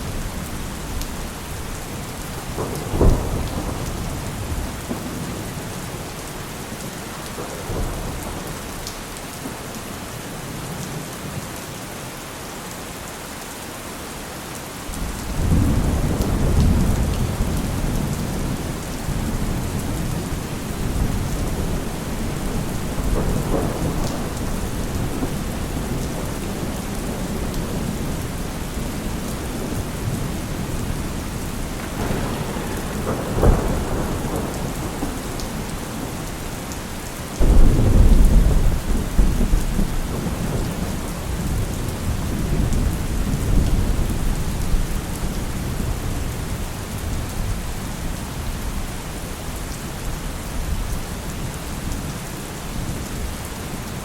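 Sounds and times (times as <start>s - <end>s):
low rolling thunder rumble: 0.0s - 8.8s, 15.0s - 51.5s
heavy rain: 0.0s - 54.0s
thunder clap: 2.4s - 5.5s, 15.0s - 36.7s, 37.4s - 44.8s.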